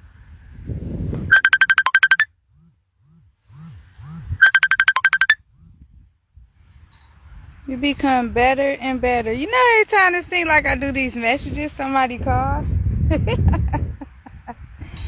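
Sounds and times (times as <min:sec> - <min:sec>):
phone ringing with trilling beeps: 0:01.3 - 0:02.3, 0:04.4 - 0:05.4.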